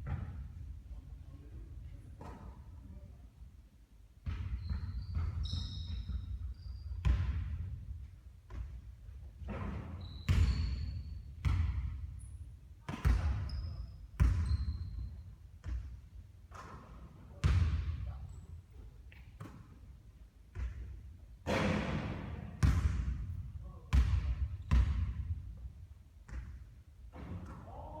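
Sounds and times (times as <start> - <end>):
basketball bouncing on court: 4.2 - 6.4, 7.0 - 12.0, 12.9 - 18.1, 20.5 - 27.6.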